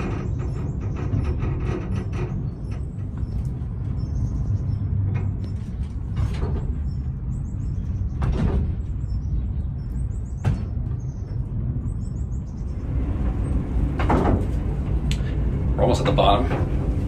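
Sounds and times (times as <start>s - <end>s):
low rumble of funicular car: 0.0s - 17.0s.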